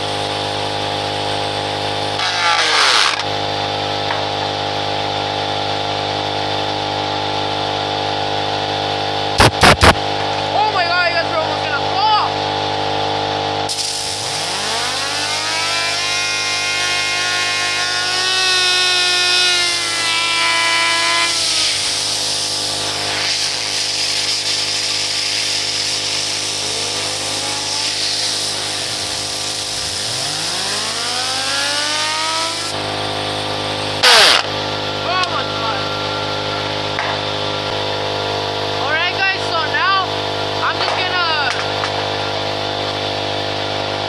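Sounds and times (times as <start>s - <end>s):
motor hum: 0.0s - 44.0s
fidget spinner whine: 16.8s - 38.1s.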